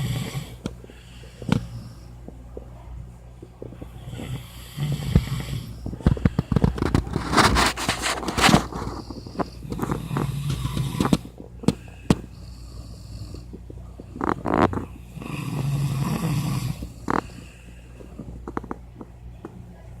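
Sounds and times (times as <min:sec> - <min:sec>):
person snoring: 0:00.0 - 0:00.7, 0:03.8 - 0:07.6, 0:08.4 - 0:13.5, 0:14.2 - 0:17.4.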